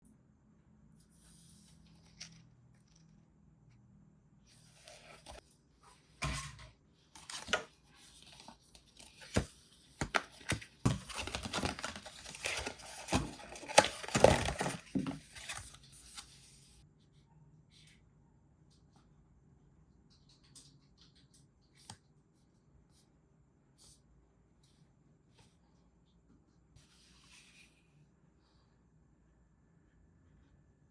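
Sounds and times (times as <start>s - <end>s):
crinkling rustling handling noise: 7.2s - 16.3s.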